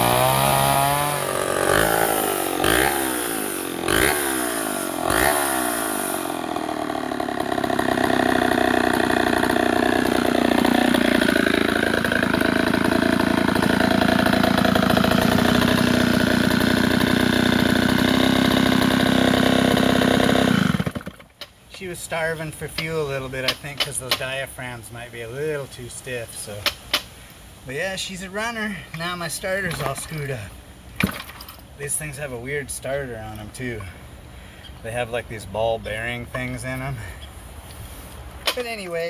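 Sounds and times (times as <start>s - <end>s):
chainsaw engine revving: 0.0s - 21.3s.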